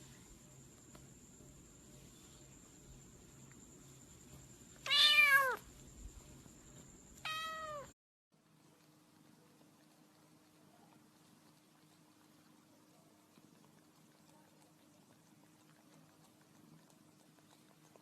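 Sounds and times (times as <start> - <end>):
cat meowing: 4.9 - 5.6, 7.2 - 7.9.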